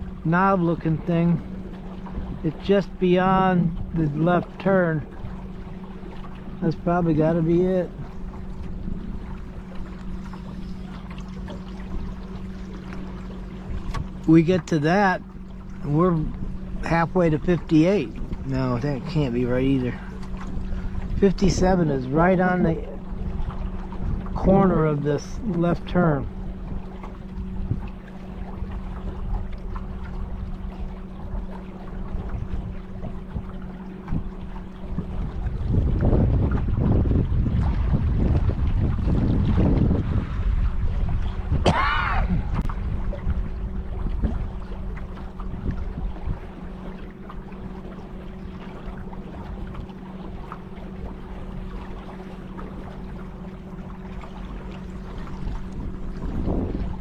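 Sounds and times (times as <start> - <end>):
low motor hum: 0.0 - 57.0
water: 0.0 - 57.0
wind rumbling on microphone: 0.0 - 57.0
water ticks: 11.1 - 13.2.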